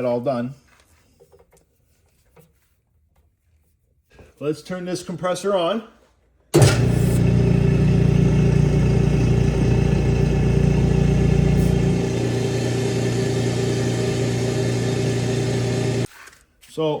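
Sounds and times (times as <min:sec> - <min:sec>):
air compressor humming: 0:06.6 - 0:16.1.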